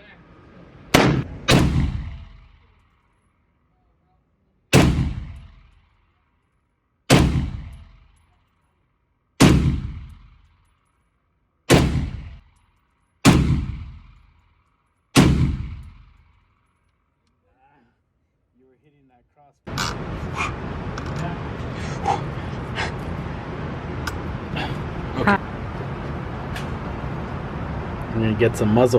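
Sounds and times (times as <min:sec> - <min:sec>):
gunshots with echo: 0:00.9 - 0:02.8, 0:04.7 - 0:05.9, 0:07.1 - 0:08.2, 0:09.4 - 0:10.5, 0:11.7 - 0:12.6, 0:13.2 - 0:14.3, 0:15.2 - 0:16.4.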